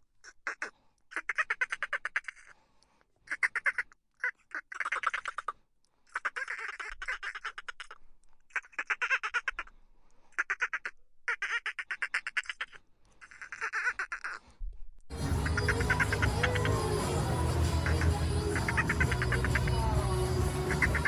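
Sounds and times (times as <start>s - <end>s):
dolphin burst-pulse calls: 15.1s - 21.0s.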